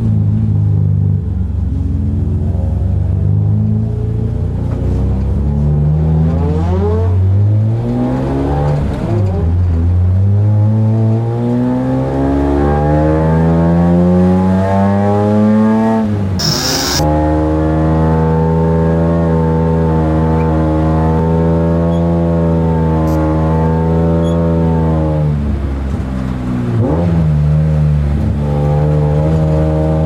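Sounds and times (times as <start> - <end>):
short hissing burst: 16.4 - 17.0.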